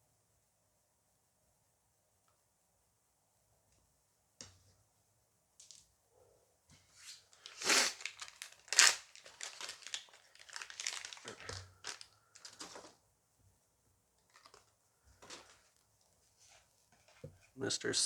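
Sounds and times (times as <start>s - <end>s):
wrapper crinkling: 7.2s - 13.0s, 14.2s - 15.8s
wrapper tearing: 7.4s - 13.0s, 14.3s - 14.7s.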